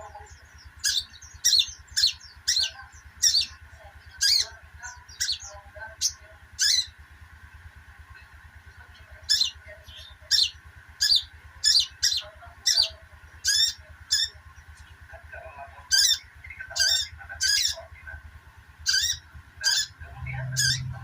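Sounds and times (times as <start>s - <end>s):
bird giving sharp high calls: 0.0s - 7.0s, 9.3s - 14.5s, 15.9s - 18.0s, 18.8s - 21.0s
steady low hum: 0.0s - 21.0s.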